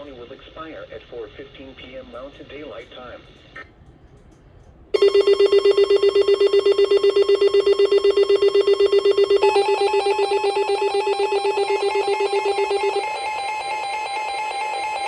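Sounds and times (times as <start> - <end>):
higher electronic tone: 5.0 - 15.0
pulsing electronic alert tone: 5.0 - 15.0.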